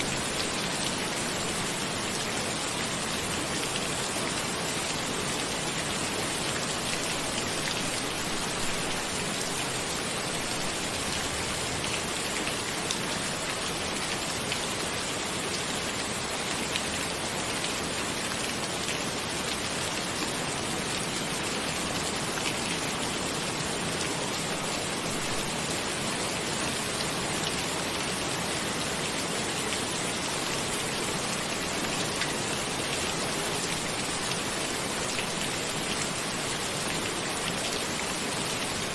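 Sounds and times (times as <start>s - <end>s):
rain falling on a cabin: 0.0s - 38.9s.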